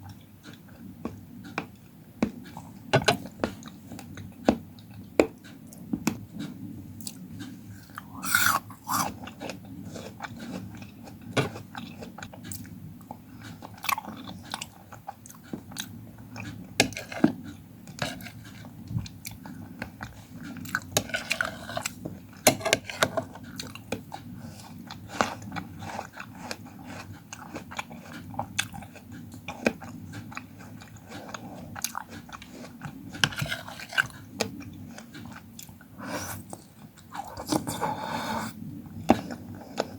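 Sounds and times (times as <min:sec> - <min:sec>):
chewing and biting fruit: 0:07.0 - 0:37.9
wet mouth sounds: 0:07.8 - 0:09.6.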